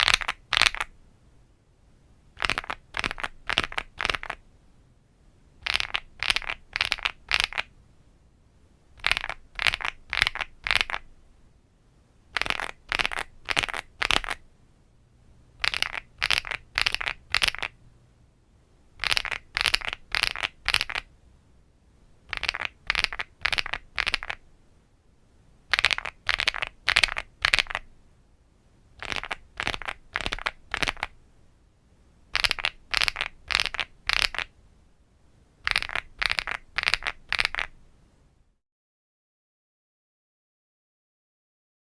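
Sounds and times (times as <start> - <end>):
mechanical keyboard typing: 25.7 - 27.8, 29.0 - 31.1.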